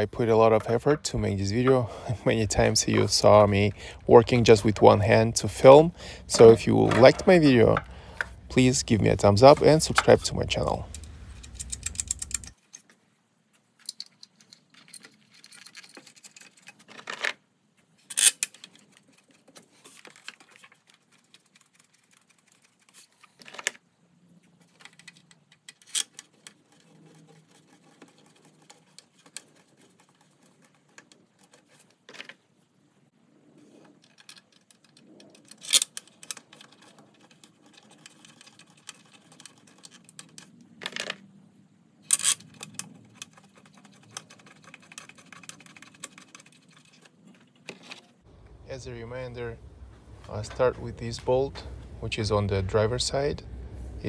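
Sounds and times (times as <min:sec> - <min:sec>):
metal parts clinking: 0:09.6 - 0:12.9, 0:34.0 - 0:36.8, 0:42.1 - 0:43.4.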